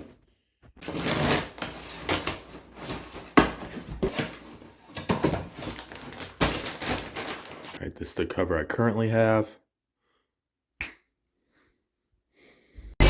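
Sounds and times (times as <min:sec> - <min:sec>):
rustling and rubbing: 0:00.8 - 0:07.8.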